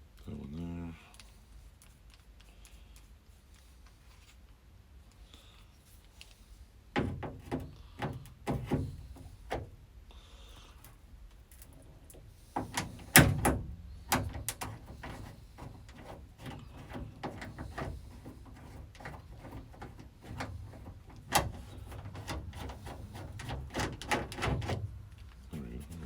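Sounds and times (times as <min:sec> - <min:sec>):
hand tools and metal parts clanking: 0:12.6 - 0:26.0.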